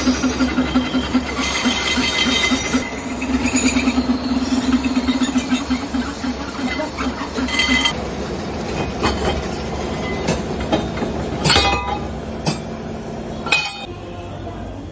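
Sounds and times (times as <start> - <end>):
low rumble of machinery: 0.0 - 14.9
metal bells being struck: 0.6 - 8.0, 13.4 - 13.9.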